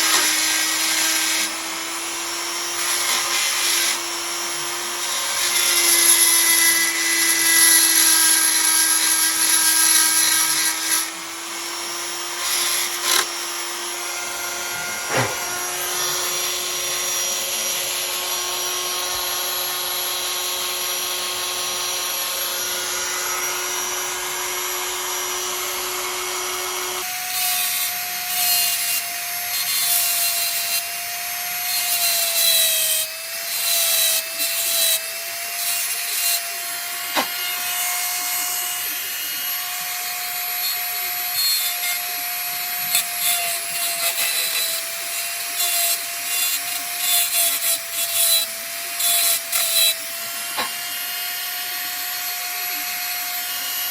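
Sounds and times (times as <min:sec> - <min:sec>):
cutter scraping metal: 0:00.0 - 0:53.9
rotary tool motor whine: 0:00.0 - 0:53.9.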